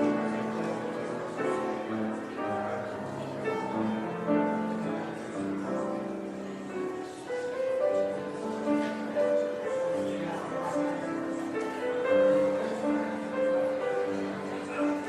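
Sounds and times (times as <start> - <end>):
slow piano piece: 0.0 - 15.0.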